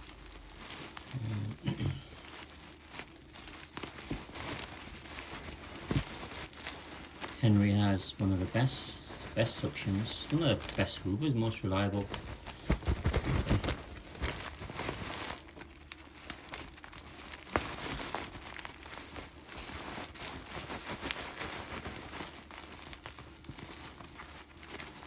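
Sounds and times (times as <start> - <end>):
dirt scraped out of bag: 0.0 - 16.1
dust bag crinkling and rustling: 0.0 - 25.0.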